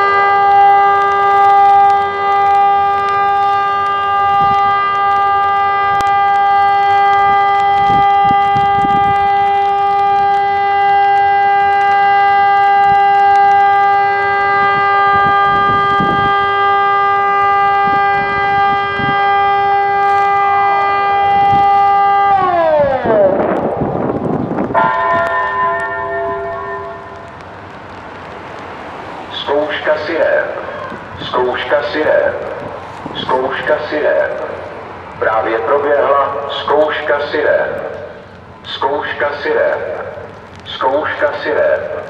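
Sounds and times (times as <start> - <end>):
electronic siren steady tone: 0.0 - 28.4.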